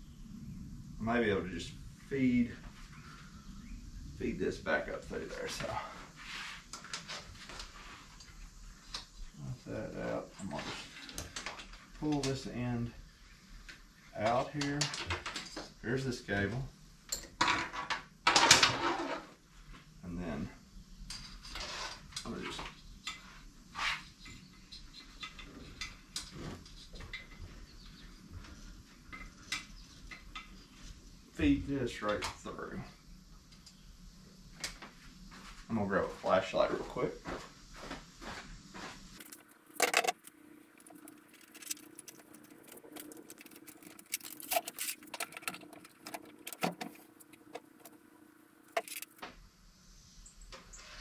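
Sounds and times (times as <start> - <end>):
steady low hum: 0.0 - 14.9, 22.1 - 50.7
small hard objects clicking: 39.2 - 47.8.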